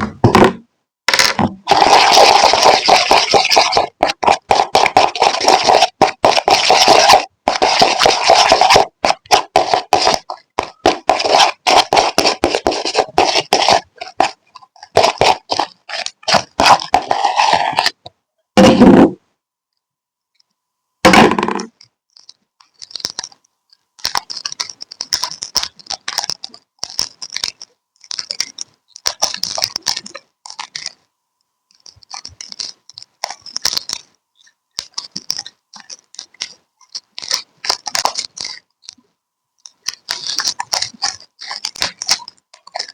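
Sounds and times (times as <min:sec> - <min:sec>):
slime squelches: 0:01.6 - 0:18.1.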